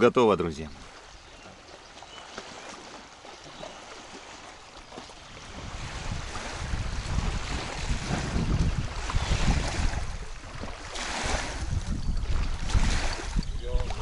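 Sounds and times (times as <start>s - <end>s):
choppy water: 0.0s - 14.0s
wind: 0.0s - 14.0s
wind buffeting microphone: 3.5s - 14.0s.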